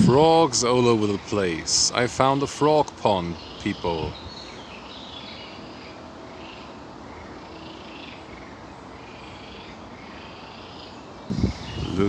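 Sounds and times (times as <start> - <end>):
frogs croaking: 5.8 - 12.0.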